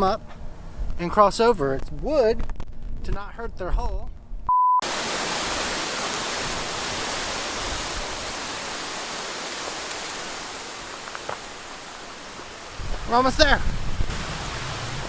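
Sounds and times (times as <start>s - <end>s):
strong wind through trees: 4.8s - 15.0s.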